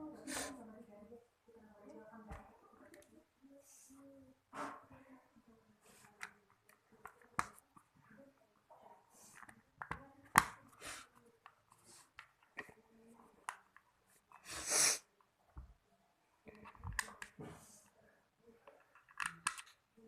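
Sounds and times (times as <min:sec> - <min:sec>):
plastic parts clicking: 0:06.0 - 0:07.9, 0:09.3 - 0:10.6, 0:16.5 - 0:17.4, 0:18.6 - 0:19.9
short hissing burst: 0:14.5 - 0:15.0.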